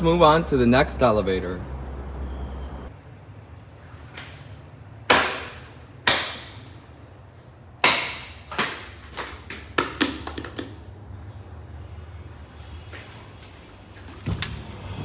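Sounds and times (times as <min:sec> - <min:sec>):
echoing knocks and bangs: 0:05.1 - 0:06.7.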